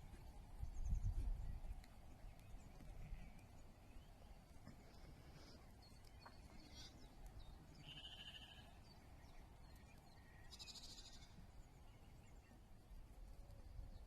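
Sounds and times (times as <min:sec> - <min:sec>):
sheep bleating faintly: 0:07.8 - 0:08.7.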